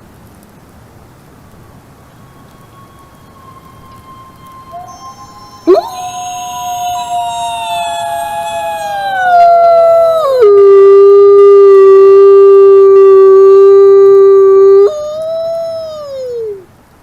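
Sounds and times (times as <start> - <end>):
wolves howling: 1.7 - 16.6.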